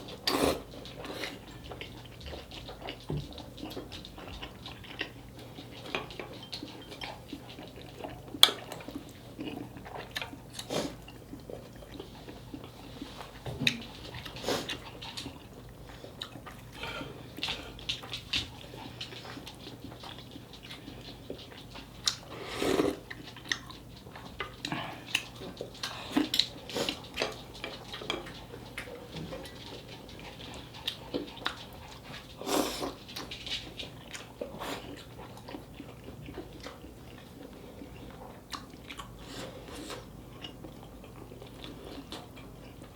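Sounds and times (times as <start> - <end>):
chewing and biting food: 0.0 - 42.9.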